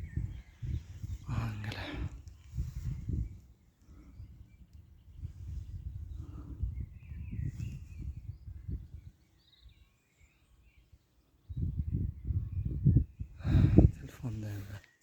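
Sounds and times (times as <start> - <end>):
wind rumble on microphone: 0.0 - 14.9
birds chirping: 0.0 - 15.0.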